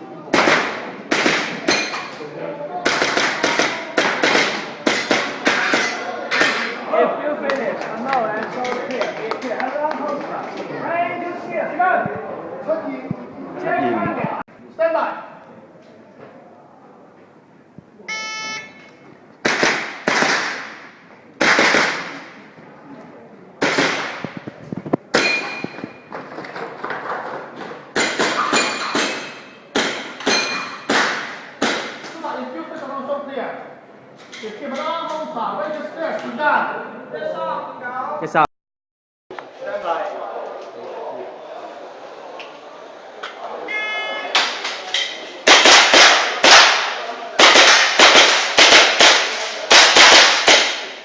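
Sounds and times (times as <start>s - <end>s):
electronic timer beep: 18.1s - 19.0s, 43.7s - 44.4s
airsoft pistol shots: 19.4s - 22.4s, 45.4s - 51.0s
pellets cracking on targets: 19.4s - 22.4s, 45.4s - 51.0s.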